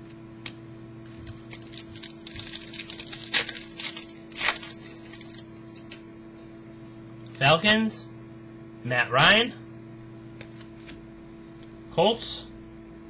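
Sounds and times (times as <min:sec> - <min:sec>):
steady electrical hum: 0:00.0 - 0:13.0
cards clicking and rustling: 0:00.4 - 0:06.0.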